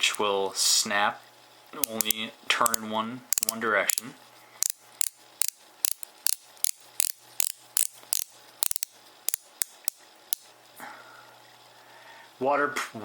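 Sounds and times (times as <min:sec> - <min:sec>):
watch bezel ratchet clicks: 0:01.8 - 0:10.5.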